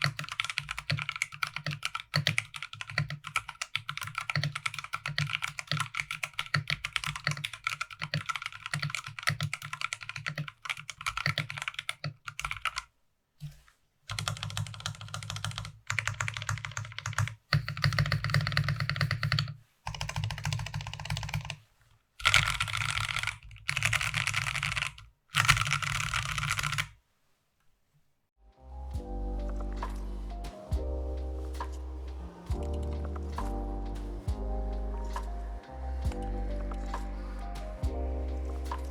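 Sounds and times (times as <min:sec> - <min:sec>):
mechanical keyboard typing: 0:00.0 - 0:12.9, 0:14.1 - 0:21.6, 0:22.2 - 0:26.9.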